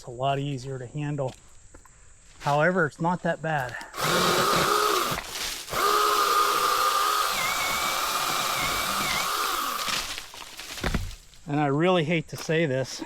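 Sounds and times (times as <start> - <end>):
electric pole saw whining: 4.0 - 10.3.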